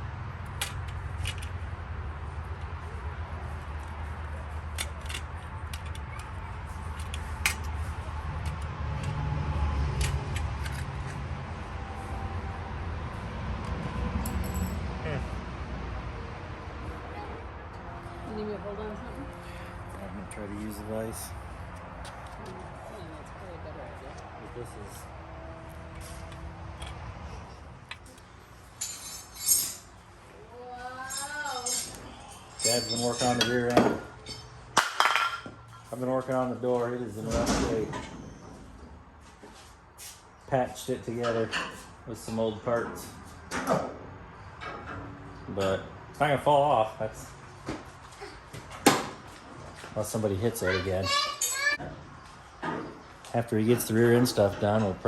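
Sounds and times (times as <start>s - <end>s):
hand tools clicking and tapping: 4.6s - 9.2s
metal clinking and jingling: 14.2s - 14.9s, 28.7s - 30.0s, 31.0s - 35.9s.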